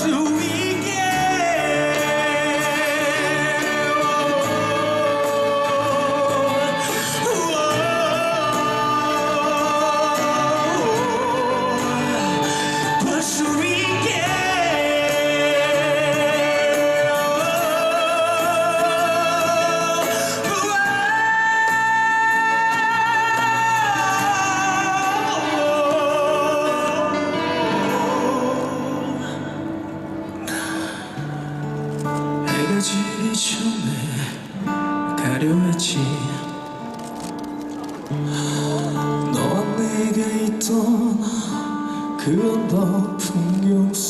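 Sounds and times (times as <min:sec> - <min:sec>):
live band music: 0:00.0 - 0:33.7.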